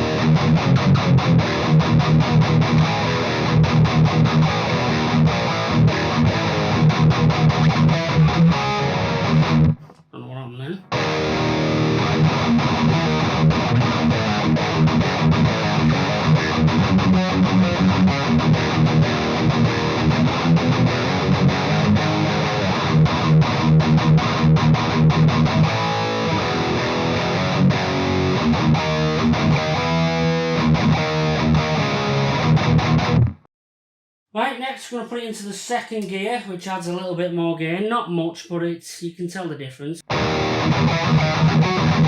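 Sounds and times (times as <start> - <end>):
distorted electric guitar riffing: 0.0 - 10.0, 10.8 - 33.4, 40.1 - 42.0.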